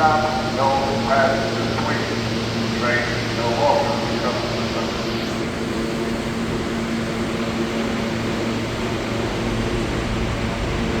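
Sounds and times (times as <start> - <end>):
idle train equipment hum: 0.0 - 11.0.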